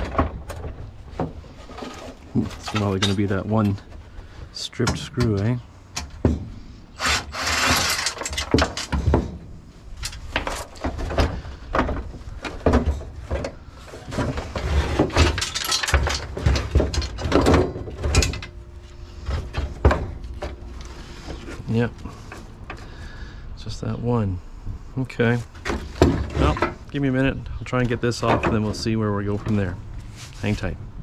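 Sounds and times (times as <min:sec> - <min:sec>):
hand tools clicking and scraping metal: 0:00.0 - 0:06.3, 0:06.9 - 0:22.9.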